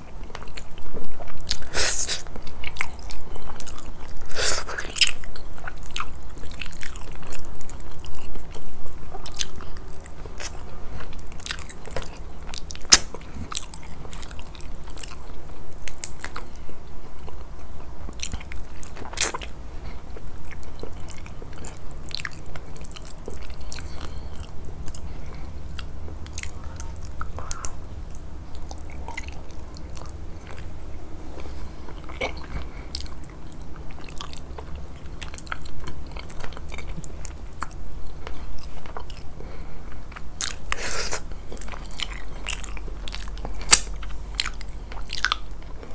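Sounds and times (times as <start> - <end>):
person chewing: 0.0 - 45.9
crunchy bites: 40.4 - 45.5.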